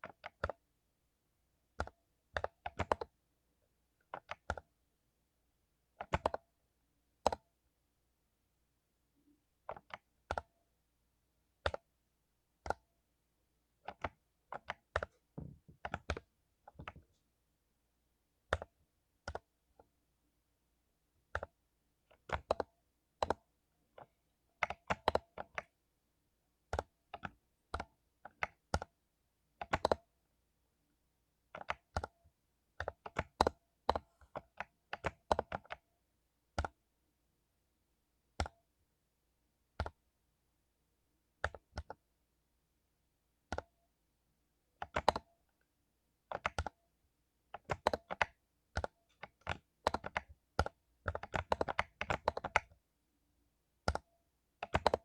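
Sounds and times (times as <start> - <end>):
mechanical keyboard typing: 0.0 - 0.6, 1.7 - 3.2, 4.0 - 4.7, 6.0 - 6.5, 7.2 - 7.5, 9.6 - 10.5, 11.6 - 11.9, 13.8 - 17.2, 18.4 - 19.5, 21.3 - 25.8, 26.7 - 29.0, 29.6 - 30.1, 31.5 - 32.2, 32.8 - 35.9, 36.5 - 36.8, 39.8 - 40.0, 41.4 - 42.0, 43.5 - 43.8, 44.8 - 45.3, 46.2 - 46.8, 47.5 - 52.8, 53.8 - 55.0.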